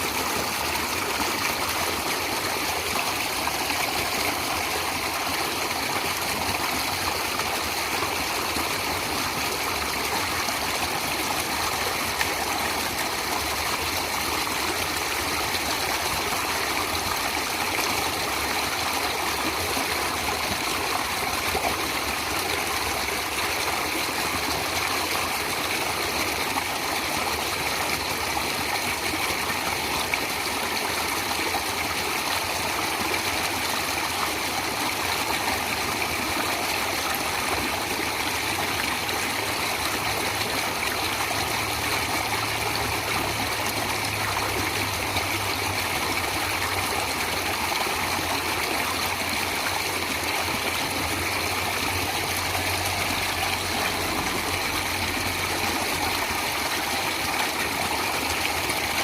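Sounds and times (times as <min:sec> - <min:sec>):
running water flowing: 0:00.0 - 0:59.0.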